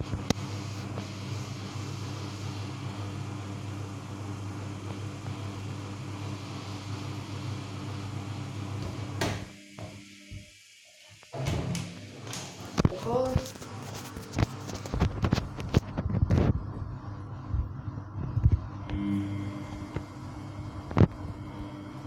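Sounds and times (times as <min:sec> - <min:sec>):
washing machine humming: 0:00.0 - 0:22.0
washing machine click: 0:11.4 - 0:12.7.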